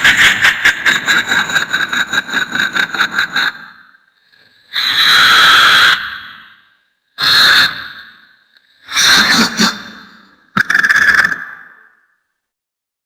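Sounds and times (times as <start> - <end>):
high-pitched maniacal laughter: 0.0 - 3.6, 8.9 - 11.3.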